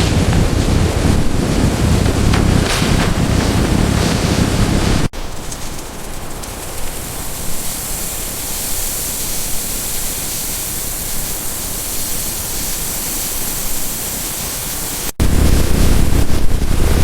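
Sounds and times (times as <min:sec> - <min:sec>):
steam hissing from locomotive: 0:04.9 - 0:17.0.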